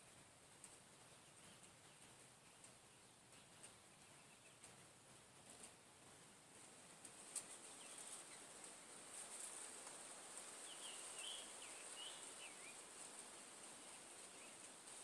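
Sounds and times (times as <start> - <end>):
steady high hiss: 0.0 - 15.0
bird chirps: 7.6 - 8.5, 10.6 - 13.1.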